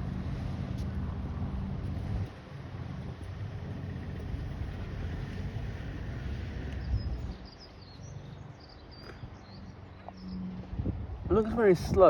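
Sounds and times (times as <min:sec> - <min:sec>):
jet engine rumble: 0:00.0 - 0:10.0
small birds chirping: 0:06.6 - 0:10.6.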